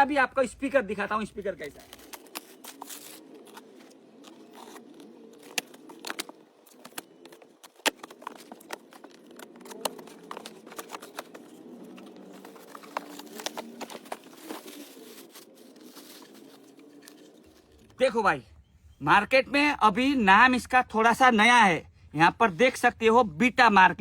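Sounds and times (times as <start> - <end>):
packaging crinkling: 1.5 - 18.0
handling clicks and knocks: 3.4 - 14.8.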